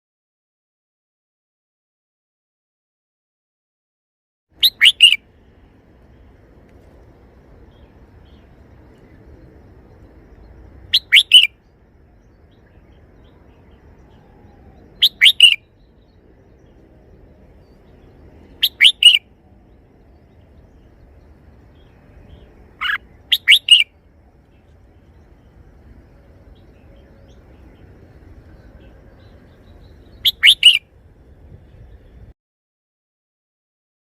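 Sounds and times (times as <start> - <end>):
bird singing short phrase: 4.6 - 5.2, 10.9 - 11.6, 12.2 - 16.8, 17.6 - 19.2, 21.8 - 23.9, 28.5 - 30.8.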